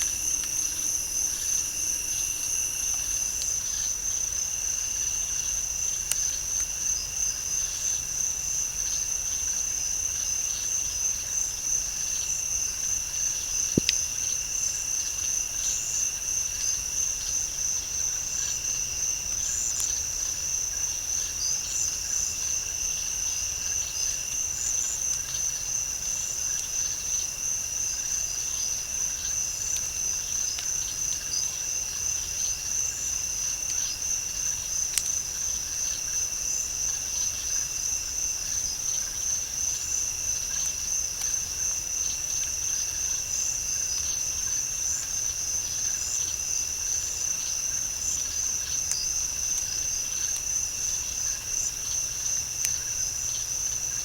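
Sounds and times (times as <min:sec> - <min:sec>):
low insect buzz: 0:00.0 - 0:05.6
insects pulsing trill: 0:00.0 - 0:54.0.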